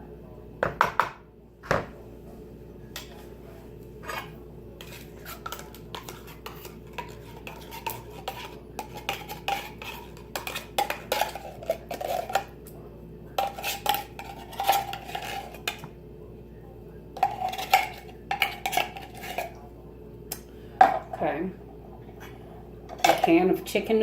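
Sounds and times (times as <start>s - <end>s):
metal spoon scraping a dish: 4.0s - 12.6s, 13.3s - 15.9s, 17.2s - 19.6s.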